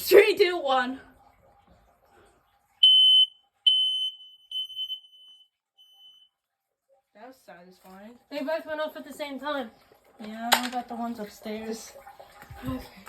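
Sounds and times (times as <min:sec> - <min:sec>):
smoke alarm beeps: 0:02.8 - 0:06.4.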